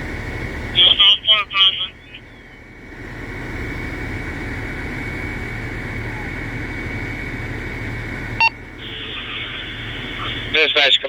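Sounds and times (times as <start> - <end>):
engine running: 0.0 - 11.0
radio channel hiss: 0.7 - 2.3, 8.8 - 11.0.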